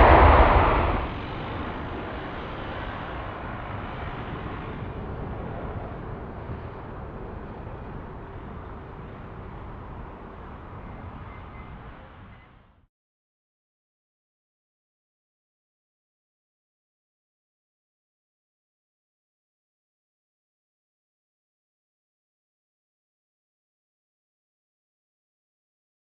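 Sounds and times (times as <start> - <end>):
jet airliner engines rumbling: 0.0 - 12.8.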